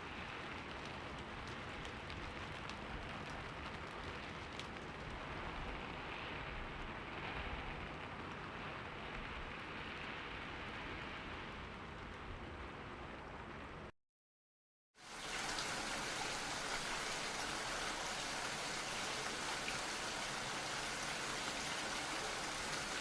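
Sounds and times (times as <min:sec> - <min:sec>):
rain hissing: 0:15.0 - 0:23.0.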